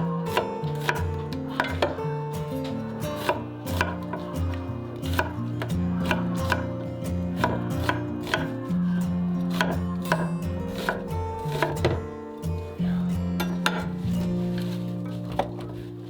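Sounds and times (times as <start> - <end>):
background music with held notes: 0.0 - 16.0
knife chopping on a board: 0.3 - 2.0, 3.2 - 6.7, 7.4 - 8.6, 9.5 - 10.2, 10.8 - 12.0.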